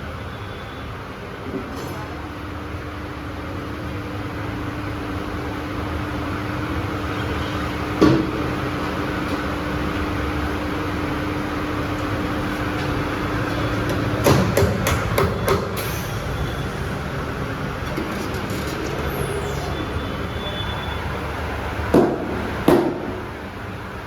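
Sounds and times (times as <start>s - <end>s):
sharp knocks: 13.9s - 16.0s.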